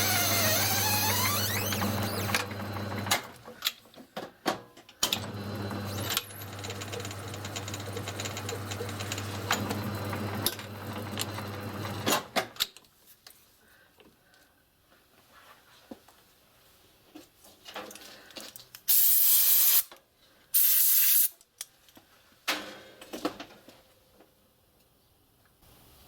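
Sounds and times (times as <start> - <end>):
lathe humming: 0.0 - 3.4, 5.2 - 12.1.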